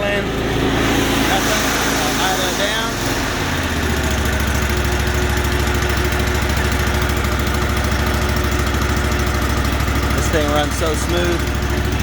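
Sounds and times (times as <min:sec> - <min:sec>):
mower engine idling: 0:00.0 - 0:12.0.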